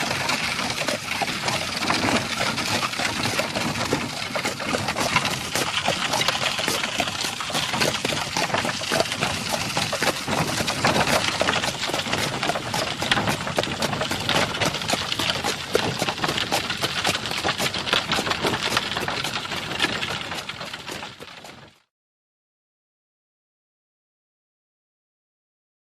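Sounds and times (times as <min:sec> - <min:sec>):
cart wheels clattering: 0:00.0 - 0:21.8
horse hooves clattering: 0:00.0 - 0:21.8.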